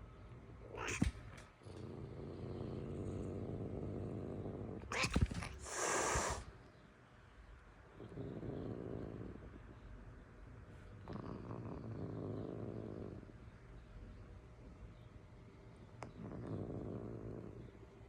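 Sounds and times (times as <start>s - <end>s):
cat growling: 0.0s - 6.5s, 7.9s - 9.7s, 11.0s - 13.3s, 16.0s - 17.8s
cat hissing: 0.6s - 1.4s, 4.8s - 6.6s
cat spitting: 0.8s - 1.3s, 4.9s - 6.4s.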